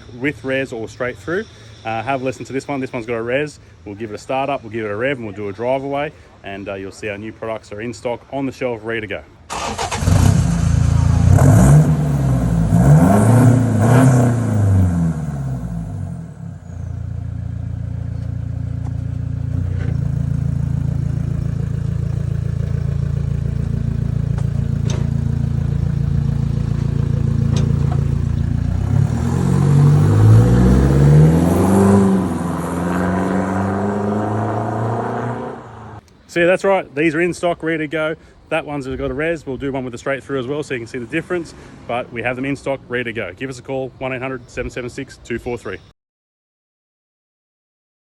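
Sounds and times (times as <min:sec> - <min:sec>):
diesel engine revving and idling: 0:09.5 - 0:36.0.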